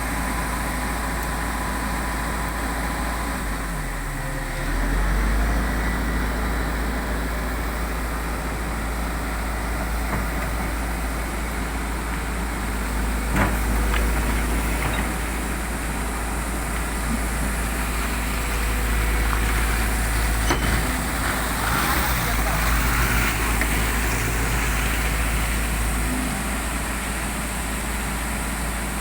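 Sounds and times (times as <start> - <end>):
diesel engine rumbling: 0.0 - 29.0.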